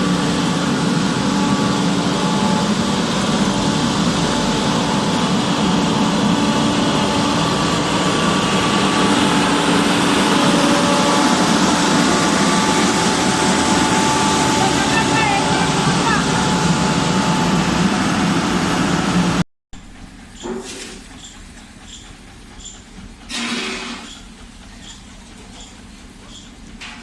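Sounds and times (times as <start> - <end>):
construction machine engine humming: 0.0 - 19.4.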